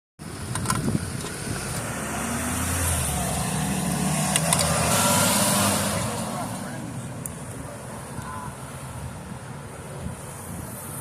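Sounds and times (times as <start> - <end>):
wind buffeting microphone: 0.3 - 5.2, 7.4 - 11.0
road vehicle passing by: 0.3 - 11.0.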